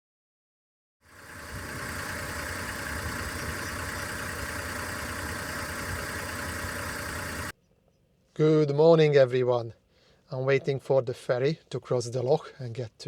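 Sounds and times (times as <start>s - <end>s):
engine idling: 1.1s - 7.5s.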